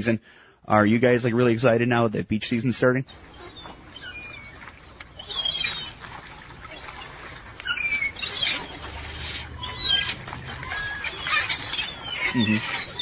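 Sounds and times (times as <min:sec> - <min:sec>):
gulls calling: 0:02.9 - 0:13.0.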